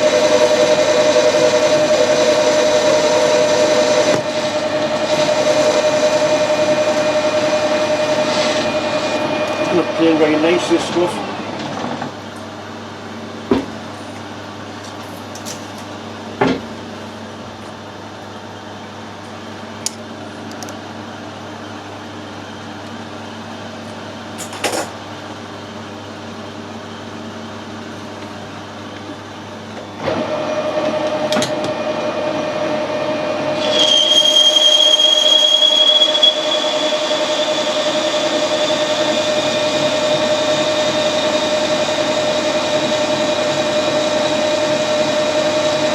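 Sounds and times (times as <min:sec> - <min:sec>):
metal lathe droning: 0:00.0 - 0:12.3, 0:30.2 - 0:45.9
high rising whine: 0:00.0 - 0:13.0, 0:30.2 - 0:45.9
steady hum: 0:00.0 - 0:14.5.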